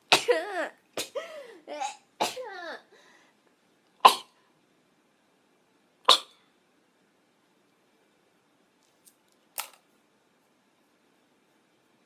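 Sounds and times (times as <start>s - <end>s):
woman sneezing: 0.1s - 2.9s.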